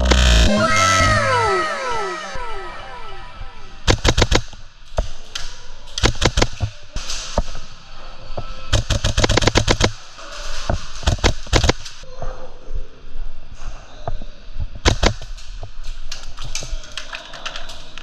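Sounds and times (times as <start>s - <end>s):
airsoft rifle firing: 3.8s - 4.6s, 6.0s - 6.7s, 8.7s - 10.0s, 14.8s - 15.3s.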